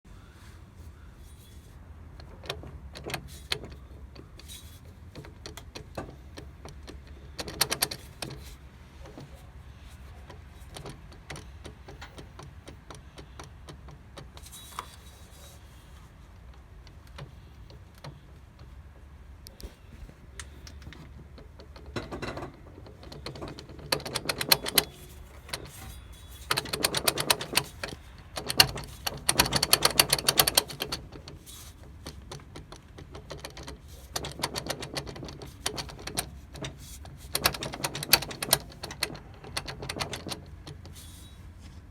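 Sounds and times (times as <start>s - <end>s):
drive line clicking: 20.3s - 41.0s.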